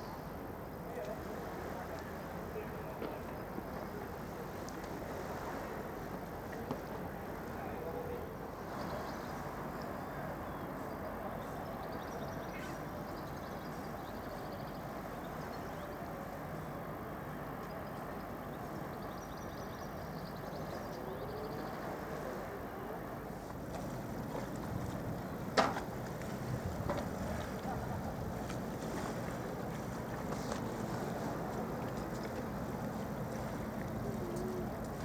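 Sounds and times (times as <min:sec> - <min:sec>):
boat wash: 0:00.0 - 0:35.0
ferry engines rumbling: 0:20.0 - 0:35.0.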